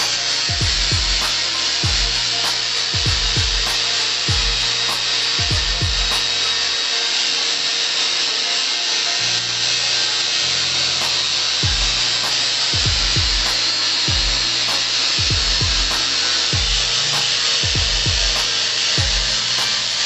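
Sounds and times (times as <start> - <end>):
hip-hop beat with sliding bass: 0.0 - 20.0
ticking hi-hats: 0.0 - 20.0
tool rasping: 0.0 - 20.0.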